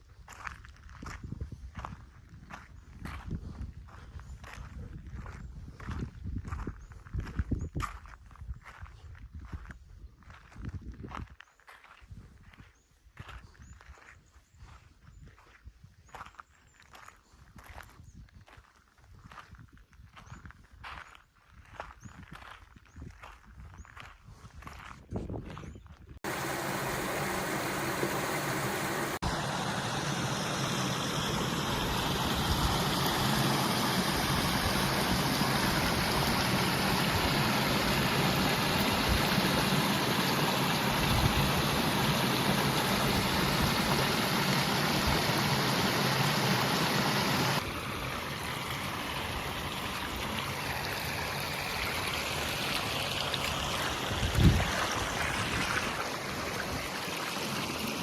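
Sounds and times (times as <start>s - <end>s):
water rushing over rocks: 26.2s - 58.0s.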